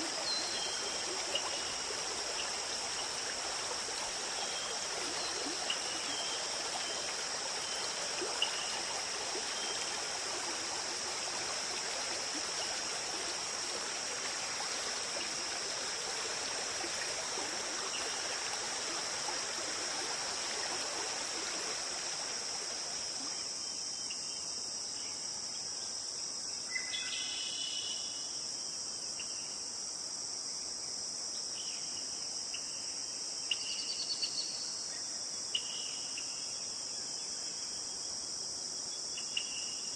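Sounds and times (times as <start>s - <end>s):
running stream water: 0.0s - 28.2s.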